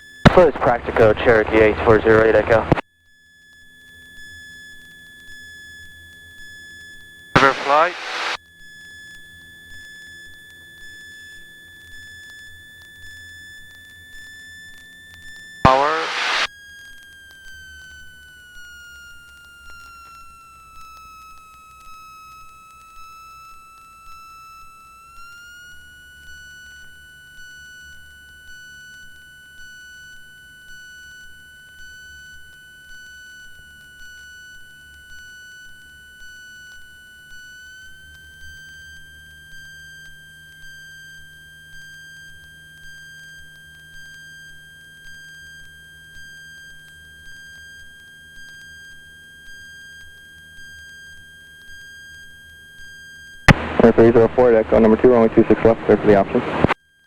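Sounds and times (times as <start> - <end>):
high electrical whine: 0.3 - 2.8, 7.4 - 8.4, 15.7 - 16.5, 53.5 - 56.8
low engine drone: 0.3 - 2.8, 7.4 - 8.4, 15.7 - 16.5, 53.5 - 56.8.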